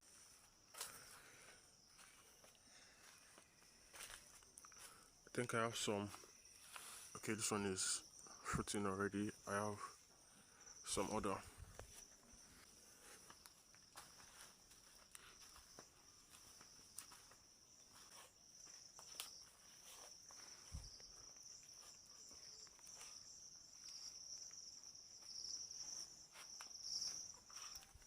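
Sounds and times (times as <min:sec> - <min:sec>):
light footsteps: 0:00.0 - 0:05.1, 0:11.0 - 0:28.0
crickets chirring: 0:00.0 - 0:28.0.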